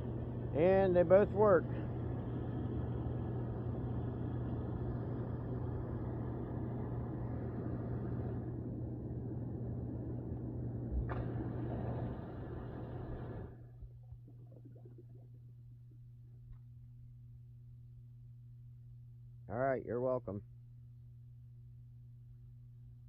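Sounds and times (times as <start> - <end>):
pump motor hum: 0.0 - 16.7
water rushing through jets: 11.1 - 13.6.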